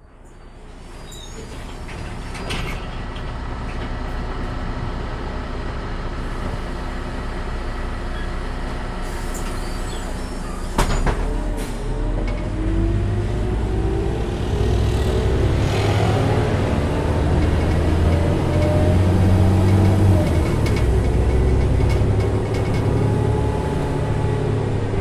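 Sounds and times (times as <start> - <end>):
bus engine humming and rattling: 0.0 - 25.0
loud clunk: 10.7 - 12.4.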